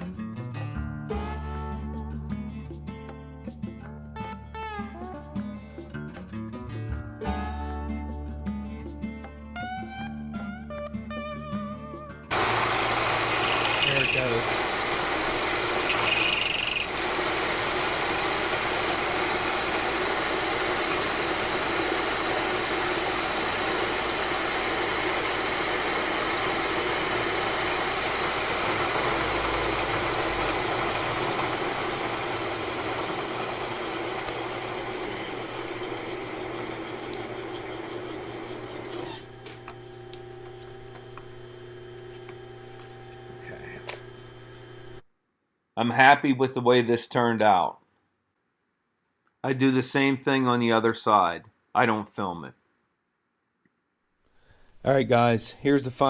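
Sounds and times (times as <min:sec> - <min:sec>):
machine humming: 0:12.3 - 0:45.0
milling machine cutting metal: 0:12.3 - 0:45.0.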